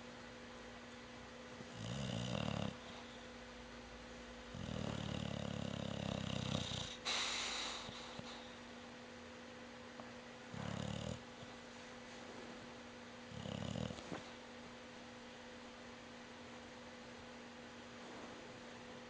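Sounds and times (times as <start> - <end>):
pet snoring: 1.6 - 3.1, 4.5 - 8.5, 10.5 - 11.6, 13.3 - 14.3.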